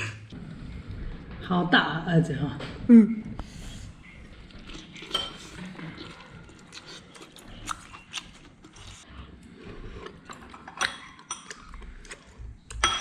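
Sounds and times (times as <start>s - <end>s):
faint chewing: 3.4s - 12.8s.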